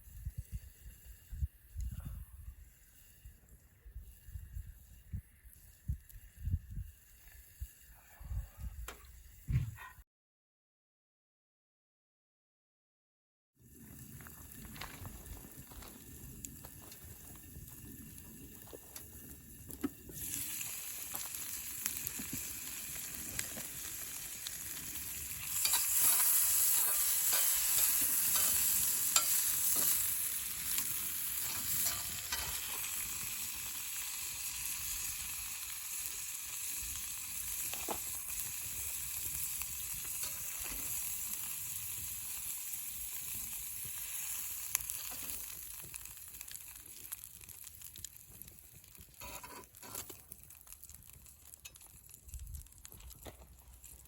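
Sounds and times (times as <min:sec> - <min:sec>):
food sizzling in a pan: 0:13.6 - 0:54.0.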